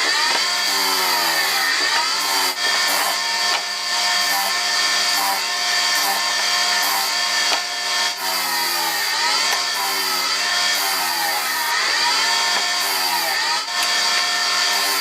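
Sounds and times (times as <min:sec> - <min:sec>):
power tool cutting wood: 0:00.0 - 0:15.0.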